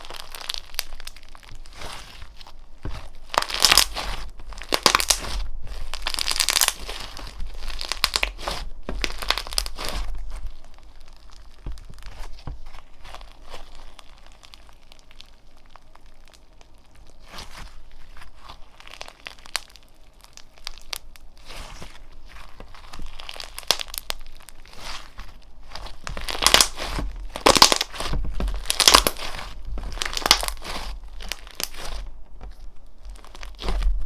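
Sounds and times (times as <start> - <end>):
slime crackling when squeezed: 0.0 - 34.0.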